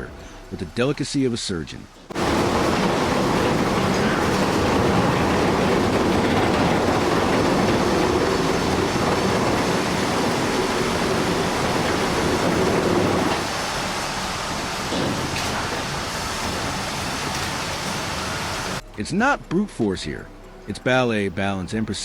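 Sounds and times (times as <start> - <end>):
crawler tracks clattering: 2.1 - 13.6
excavator diesel engine rumbling: 2.1 - 18.8.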